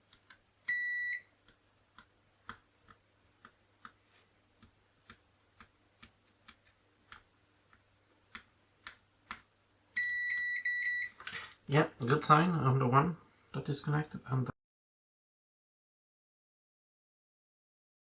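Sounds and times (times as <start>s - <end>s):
multimeter beep: 0.7s - 1.3s, 10.0s - 11.2s.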